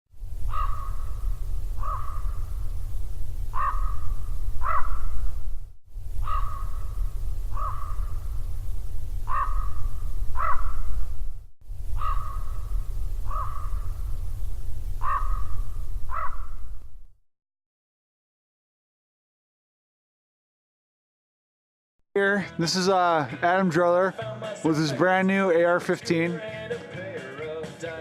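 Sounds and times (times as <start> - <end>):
steady low rumble: 0.1 - 17.2
crows cawing: 0.5 - 2.6, 3.5 - 5.1, 6.2 - 8.2, 9.2 - 10.9, 12.0 - 14.0, 15.0 - 16.6.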